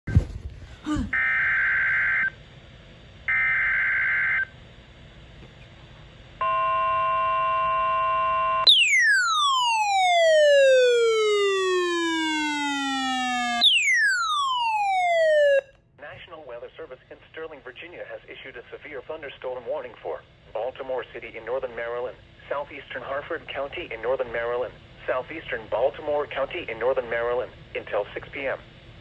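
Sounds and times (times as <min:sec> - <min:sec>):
falling electronic sweeps: 0:08.7 - 0:15.6
steady electronic tone: 0:08.7 - 0:15.6.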